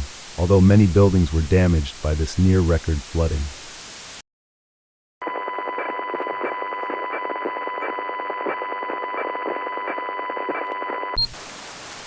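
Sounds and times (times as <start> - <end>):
electronic beep tone over buzz: 8.5 - 11.4.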